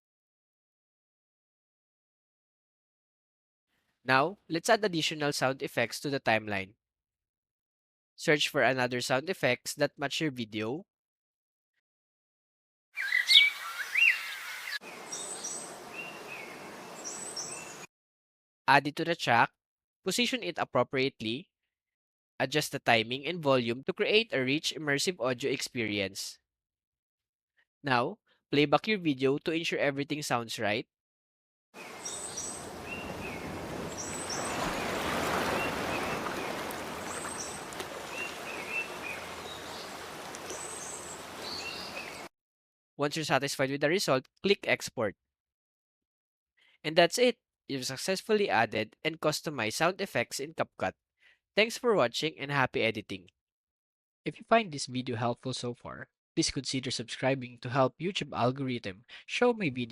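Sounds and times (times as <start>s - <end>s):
bird chirps: 13.0s - 17.9s, 31.8s - 42.3s
outdoor background noise: 14.8s - 17.8s, 31.8s - 42.3s.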